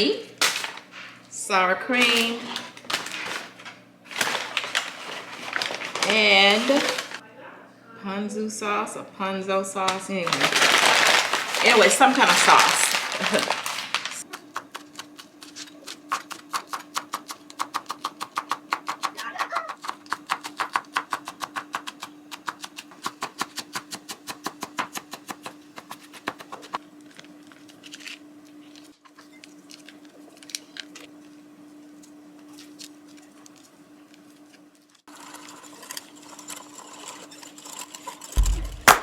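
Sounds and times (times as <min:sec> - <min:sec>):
steady low hum: 0:38.4 - 0:39.0.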